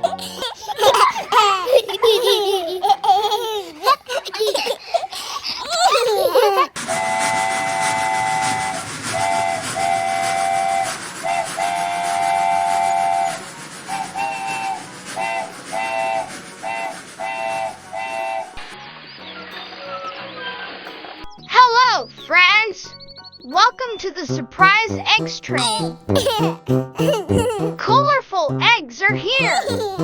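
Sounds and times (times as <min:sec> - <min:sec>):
steam train whistle: 0:06.8 - 0:18.8
high wavering voice: 0:25.0 - 0:27.9, 0:29.3 - 0:30.0.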